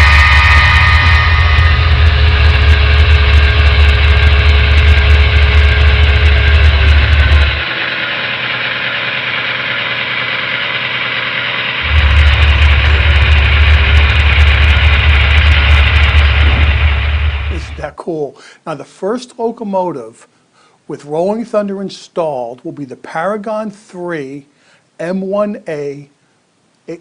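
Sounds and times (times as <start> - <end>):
locomotive engine rumble from speaker: 0.0 - 17.8.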